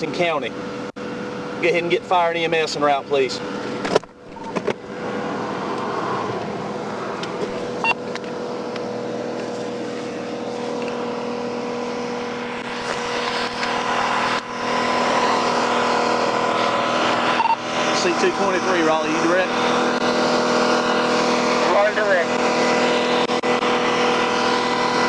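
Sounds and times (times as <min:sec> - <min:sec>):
constant low hum: 0:00.0 - 0:25.0
highway traffic: 0:00.0 - 0:25.0.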